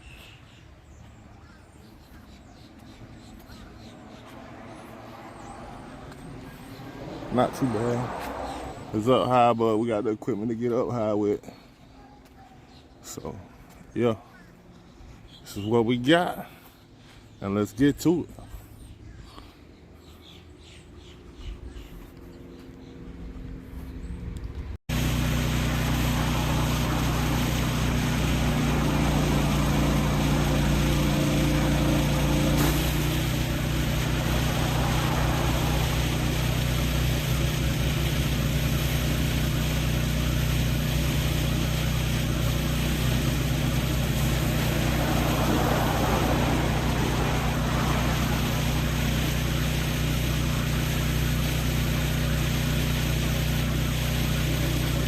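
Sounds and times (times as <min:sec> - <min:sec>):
pressure washer engine hum: 0:01.4 - 0:11.8, 0:24.9 - 0:55.0
high-pressure water spray hissing: 0:24.9 - 0:55.0.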